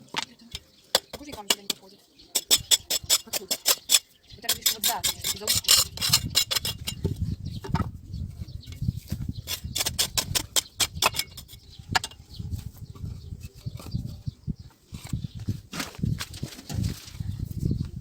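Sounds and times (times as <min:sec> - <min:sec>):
stones and bricks knocking: 0:00.0 - 0:07.9, 0:08.7 - 0:12.2.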